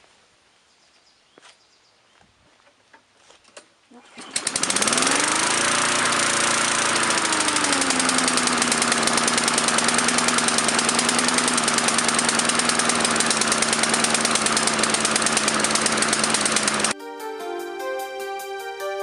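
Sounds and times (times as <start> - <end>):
lawn mower engine running: 4.0 - 17.0.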